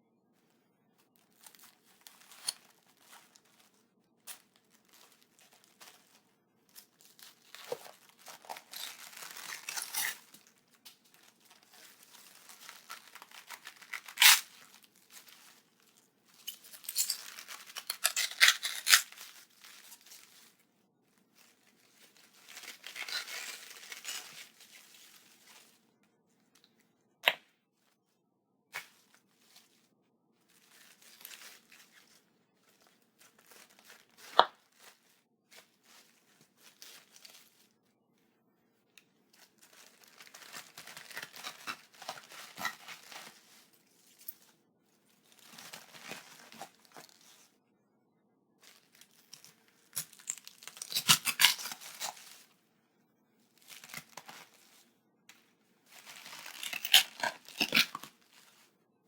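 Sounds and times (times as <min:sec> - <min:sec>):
knife cutting cabbage: 0:13.1 - 0:14.5, 0:16.9 - 0:19.2.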